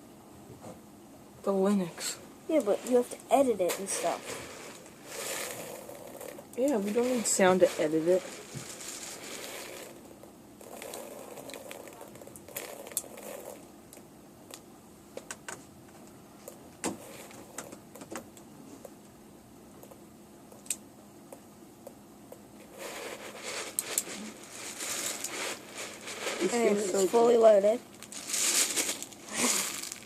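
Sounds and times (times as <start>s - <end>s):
handling rustle: 2.5s - 10.0s, 22.6s - 30.0s.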